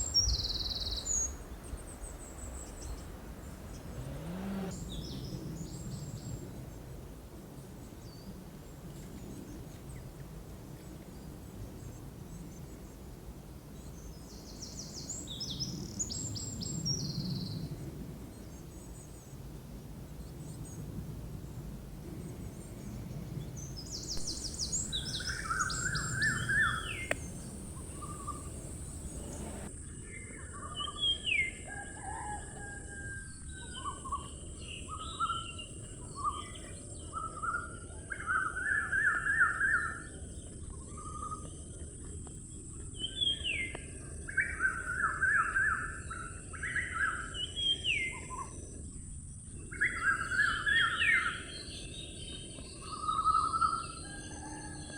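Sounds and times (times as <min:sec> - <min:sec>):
birds chirping and singing: 0:22.2 - 0:29.7.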